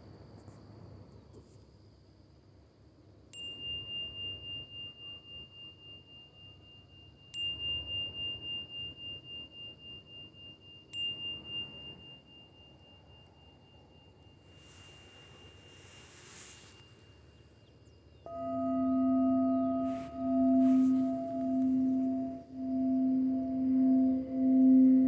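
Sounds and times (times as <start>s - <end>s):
singing bowl ringing: 3.4s - 25.0s.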